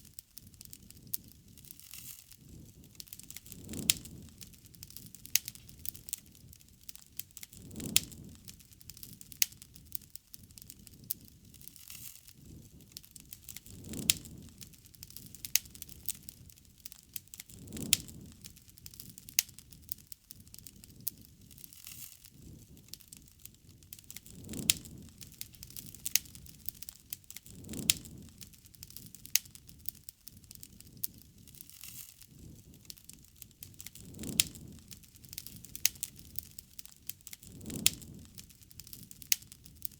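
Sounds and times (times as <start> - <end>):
campfire crackling and popping: 0.0 - 39.9.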